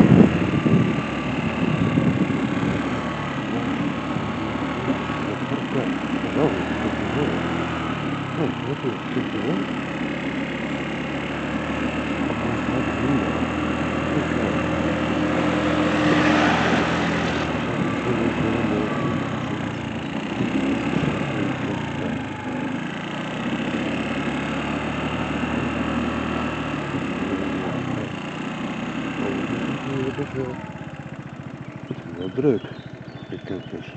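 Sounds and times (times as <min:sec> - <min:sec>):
car engine humming: 0:00.0 - 0:33.9
road noise: 0:00.0 - 0:33.9
loud rushing swell: 0:14.9 - 0:18.2.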